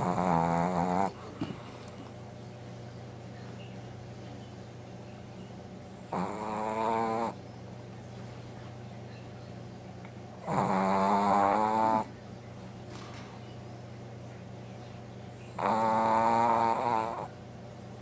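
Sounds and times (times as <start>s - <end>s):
dog snoring: 0.0s - 1.9s, 6.0s - 7.4s, 10.4s - 12.1s, 15.5s - 17.4s.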